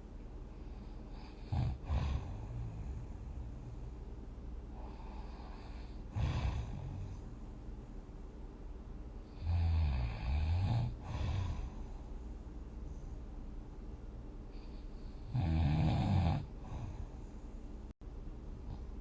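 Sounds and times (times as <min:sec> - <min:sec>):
person snoring: 0:01.1 - 0:03.9, 0:04.8 - 0:07.2, 0:09.2 - 0:12.0, 0:14.6 - 0:17.3.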